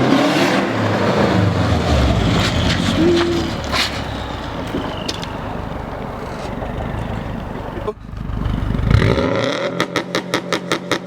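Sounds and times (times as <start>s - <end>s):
car engine pulling hard: 0.0s - 11.0s.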